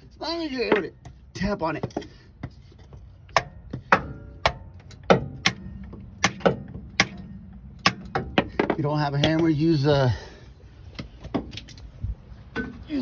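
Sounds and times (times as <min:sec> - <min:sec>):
metal bar tapping on metal: 0:03.3 - 0:08.5.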